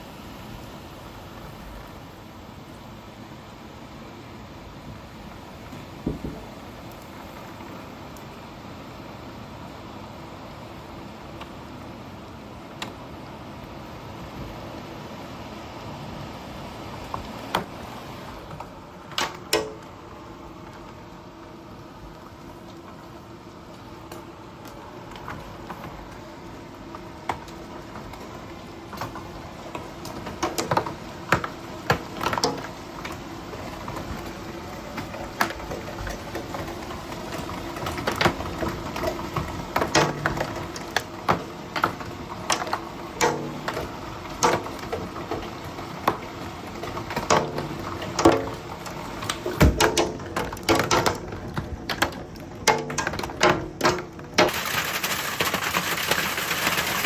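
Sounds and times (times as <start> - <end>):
rain hiss: 0.0 - 57.0
hailstones striking hard surfaces: 26.9 - 57.0.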